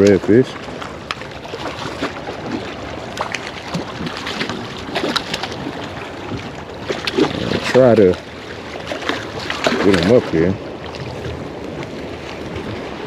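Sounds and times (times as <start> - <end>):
water noise: 0.0 - 13.0
wind: 0.0 - 13.0.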